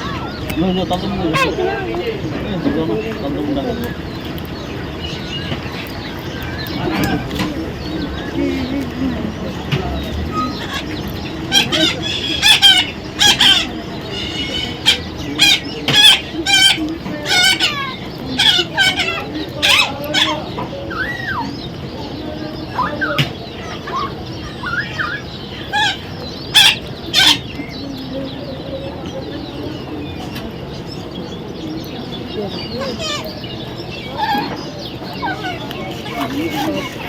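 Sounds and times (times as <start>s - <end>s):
parrot squawking: 1.2s - 1.8s, 10.3s - 21.5s, 22.7s - 27.6s
parrot whistled calls: 22.8s - 27.5s.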